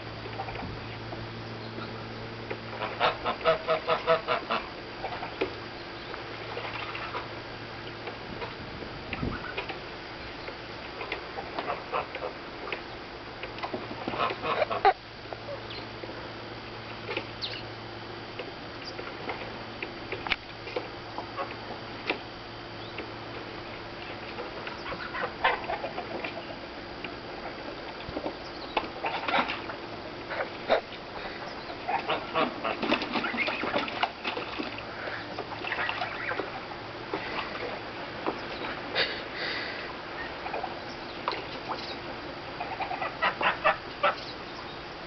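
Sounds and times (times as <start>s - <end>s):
low steady hum: 0.0s - 45.0s
geese honking: 2.7s - 7.4s, 9.2s - 12.8s, 14.0s - 15.9s, 21.1s - 21.7s, 24.0s - 26.8s, 28.5s - 38.8s, 39.4s - 45.0s
bird chirps: 15.6s - 15.9s, 17.4s - 17.7s.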